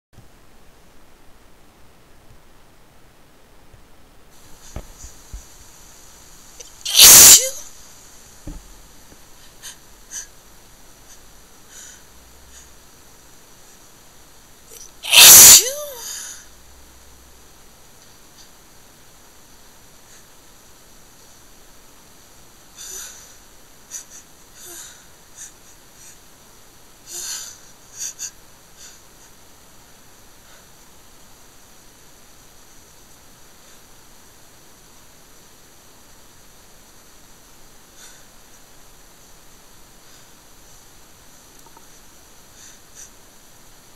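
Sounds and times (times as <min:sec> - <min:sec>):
short sharp breath puffs: 0:06.6 - 0:07.6
person sneezing: 0:06.6 - 0:07.7, 0:14.8 - 0:16.4
person's hitching breaths: 0:09.2 - 0:10.4, 0:11.0 - 0:13.0, 0:22.8 - 0:26.3, 0:37.9 - 0:38.6, 0:41.6 - 0:43.3
faint clicks: 0:41.5 - 0:42.0.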